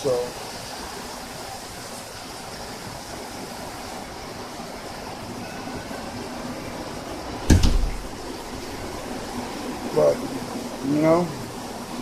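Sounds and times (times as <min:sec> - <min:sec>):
steady rushing noise: 0:06.3 - 0:12.0
loud thump: 0:07.5 - 0:08.1.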